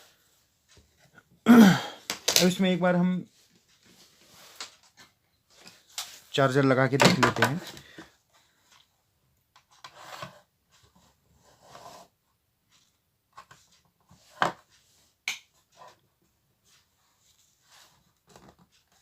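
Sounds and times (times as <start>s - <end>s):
soft rustling: 2.6s - 6.5s.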